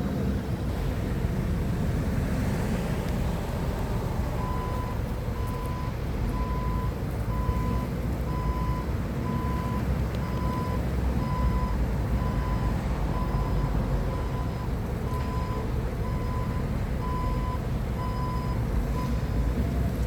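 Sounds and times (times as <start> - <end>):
forklift engine running: 0.0 - 20.0
reversing alarm beeping: 4.4 - 19.4.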